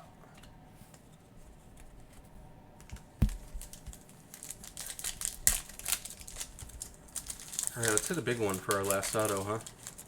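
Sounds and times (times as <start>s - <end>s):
cards and foil wrapper handled: 2.9s - 10.0s.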